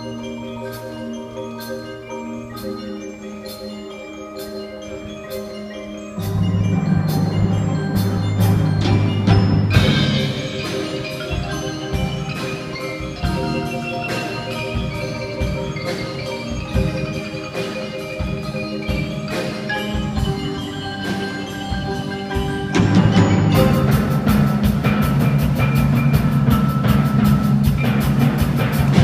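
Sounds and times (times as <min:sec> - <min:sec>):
mallet percussion band melody: 0:00.0 - 0:29.0.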